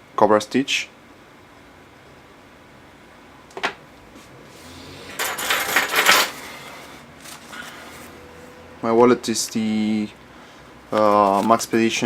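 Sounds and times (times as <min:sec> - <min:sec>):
small hard objects clattering: 0:05.2 - 0:06.4.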